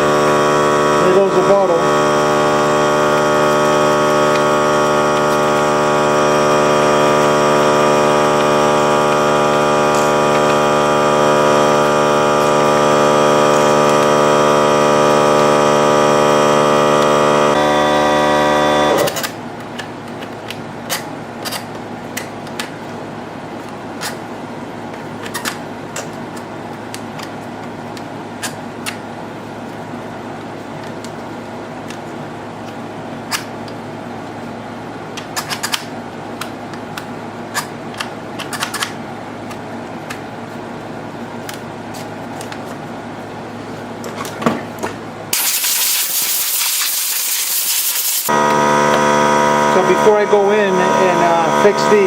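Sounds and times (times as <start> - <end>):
air compressor motor humming: 0.0 - 26.9, 44.6 - 52.0.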